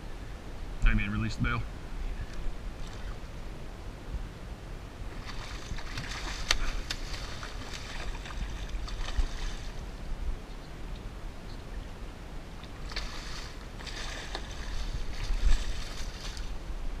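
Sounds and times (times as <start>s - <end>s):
wind rumble on microphone: 0.0s - 17.0s
water against hull: 1.8s - 3.6s, 5.0s - 11.6s, 12.5s - 17.0s.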